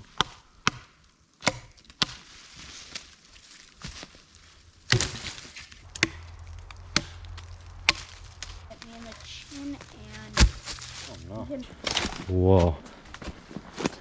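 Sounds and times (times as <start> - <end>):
sharp wooden knocks and cracks: 0.0 - 2.3, 4.8 - 9.1.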